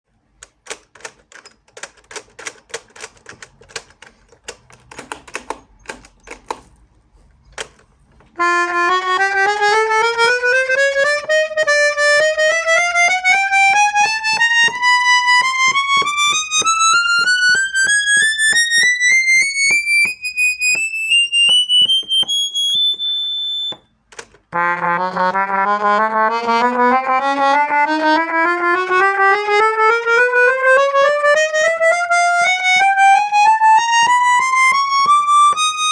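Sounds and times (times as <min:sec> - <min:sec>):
accordion key clicks: 0:00.3 - 0:06.8, 0:07.4 - 0:23.1, 0:23.7 - 0:30.3
accordion playing scales: 0:07.5 - 0:23.8, 0:24.5 - 0:35.9.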